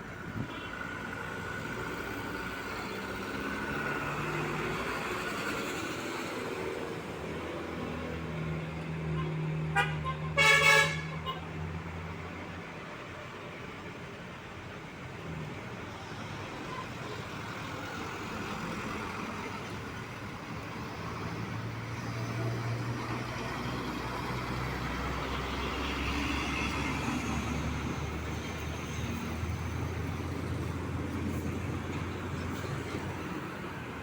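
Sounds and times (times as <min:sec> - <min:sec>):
traffic noise: 0:00.0 - 0:34.0
heavy truck engine rumble: 0:12.1 - 0:34.0.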